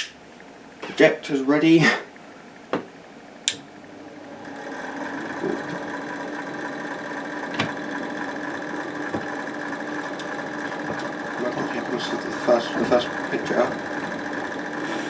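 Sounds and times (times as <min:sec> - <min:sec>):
projector switch click: 0:00.0 - 0:00.2, 0:03.4 - 0:03.7
projector fan humming: 0:00.0 - 0:15.0.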